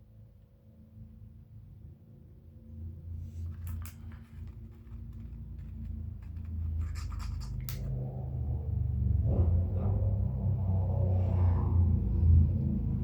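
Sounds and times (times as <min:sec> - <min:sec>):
low hum: 0:02.6 - 0:13.0
epoxy scraping into wood: 0:03.4 - 0:08.0.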